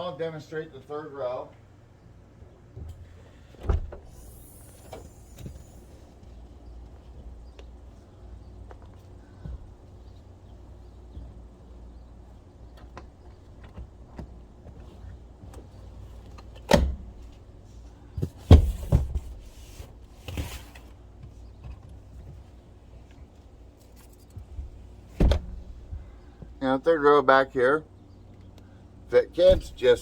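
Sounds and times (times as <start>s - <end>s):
heavy thumps of car doors: 3.6s - 4.1s, 18.2s - 19.4s, 24.6s - 26.6s, 29.4s - 30.0s.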